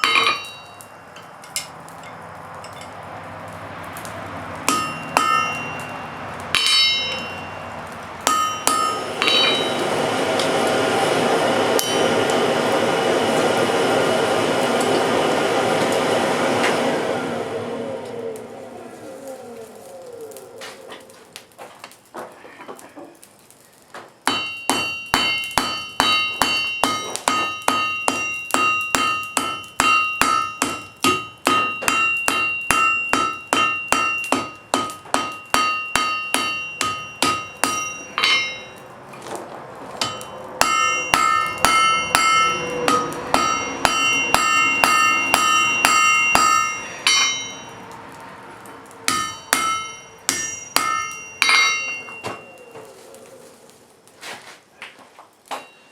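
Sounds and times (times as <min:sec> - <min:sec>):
hammer striking iron on anvil: 0:00.0 - 0:03.0, 0:04.6 - 0:10.8, 0:11.7 - 0:13.2, 0:24.2 - 0:38.8, 0:40.0 - 0:47.9, 0:49.1 - 0:52.8.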